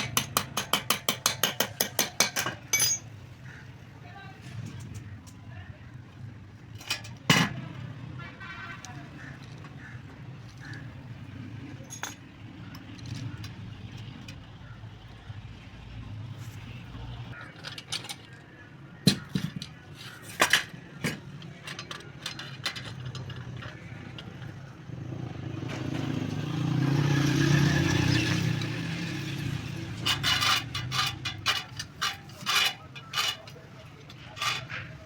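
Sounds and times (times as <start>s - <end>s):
metal clicks and knocks: 0.0s - 3.2s, 17.3s - 24.6s
vehicle engine passing: 24.8s - 30.2s.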